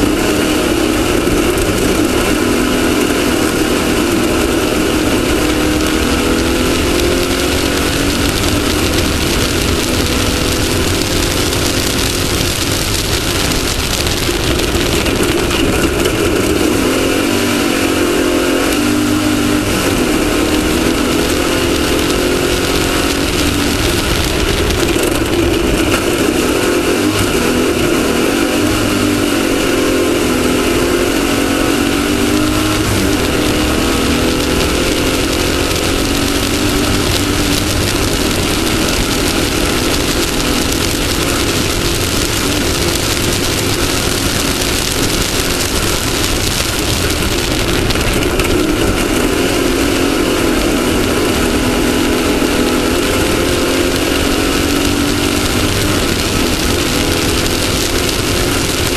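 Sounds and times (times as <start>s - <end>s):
buggy engine revving: 0.0s - 58.9s
rattle over rough terrain: 0.0s - 58.9s.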